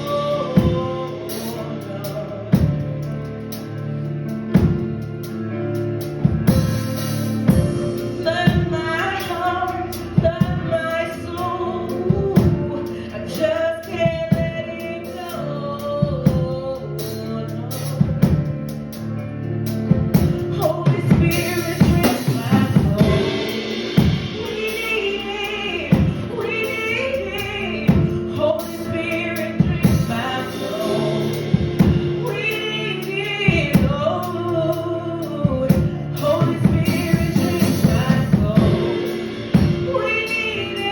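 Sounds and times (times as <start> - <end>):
gospel singing: 0.0 - 3.2, 20.5 - 40.9
backing band: 0.0 - 40.9
drum kit steady beat: 0.0 - 40.9.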